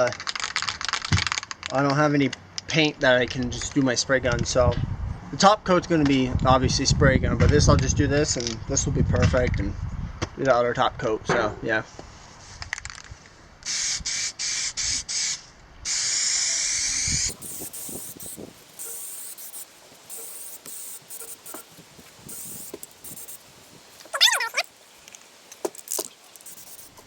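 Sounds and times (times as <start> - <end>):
aerosol can spraying: 13.7 - 24.7, 25.5 - 27.0
loud high squeak: 24.1 - 24.7.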